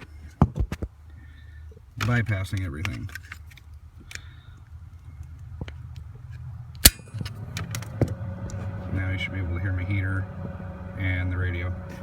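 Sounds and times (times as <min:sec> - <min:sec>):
sharp electrical click: 0:06.8 - 0:07.2
heater blower fan whine: 0:06.8 - 0:12.0
low hum: 0:06.8 - 0:12.0.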